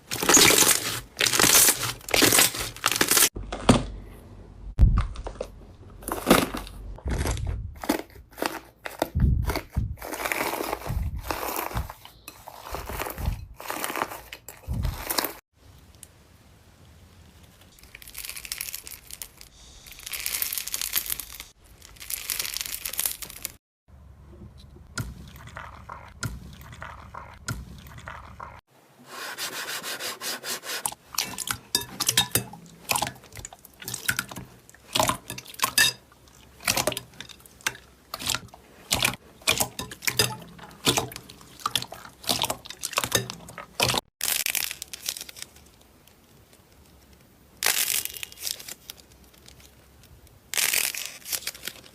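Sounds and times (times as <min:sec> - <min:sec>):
slime squelching: 0:24.7 - 0:28.6, 0:30.9 - 0:45.5.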